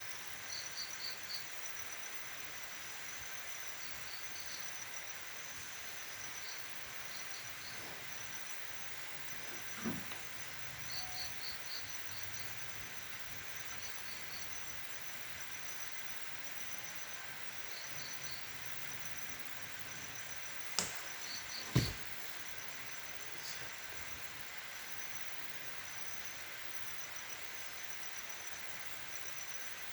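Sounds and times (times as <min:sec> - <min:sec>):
insects chirping in trills: 0:00.0 - 0:29.9
sharp knocks or snaps: 0:20.8 - 0:22.0.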